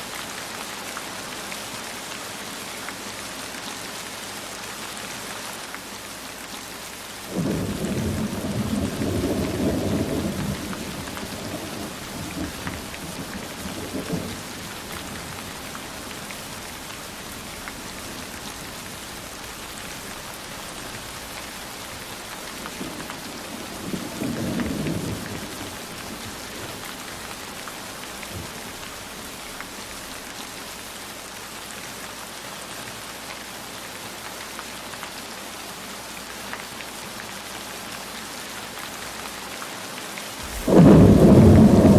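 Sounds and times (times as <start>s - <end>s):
heavy rain: 0.0s - 41.9s
thunder rumbling: 7.3s - 30.1s, 40.4s - 41.9s.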